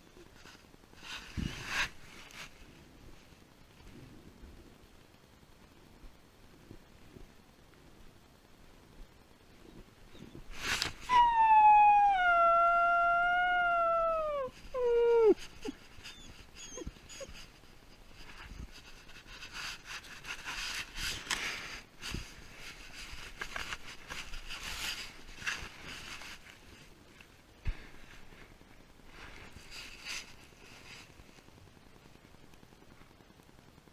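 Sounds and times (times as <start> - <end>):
faint rustling and clicks: 0.0 - 11.1, 14.0 - 33.9
dog howling: 11.1 - 17.3.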